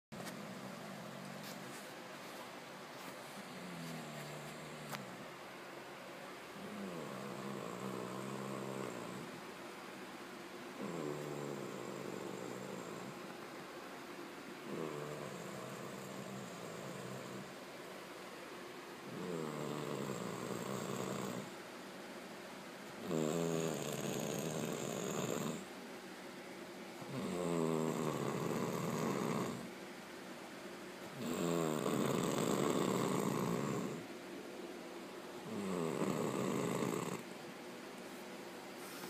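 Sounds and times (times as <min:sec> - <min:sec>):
quiet breathing: 0:00.2 - 0:05.3, 0:38.0 - 0:39.0
dog snoring: 0:03.4 - 0:05.3, 0:06.6 - 0:09.4, 0:10.8 - 0:13.3, 0:14.6 - 0:17.6, 0:19.0 - 0:21.5, 0:23.0 - 0:25.7, 0:27.0 - 0:29.7, 0:31.1 - 0:34.1, 0:35.4 - 0:37.3.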